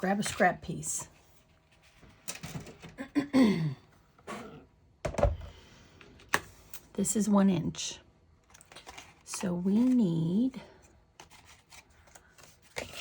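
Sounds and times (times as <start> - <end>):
paper rustling: 8.4 - 10.2, 11.2 - 13.0.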